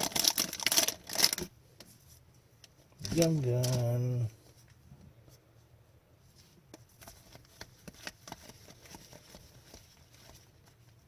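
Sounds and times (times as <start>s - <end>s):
cards being flipped through: 7.0s - 10.6s.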